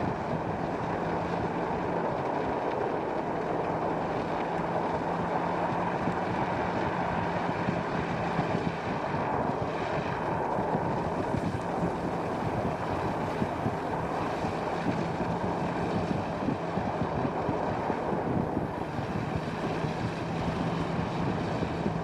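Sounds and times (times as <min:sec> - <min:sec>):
engine hum: 0:00.0 - 0:22.0
road and wind noise: 0:00.0 - 0:22.0.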